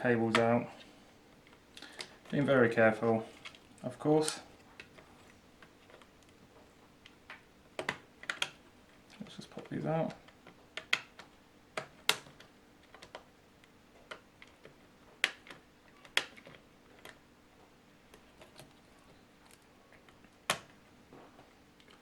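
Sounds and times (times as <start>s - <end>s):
cable connectors clicking: 7.0s - 13.3s.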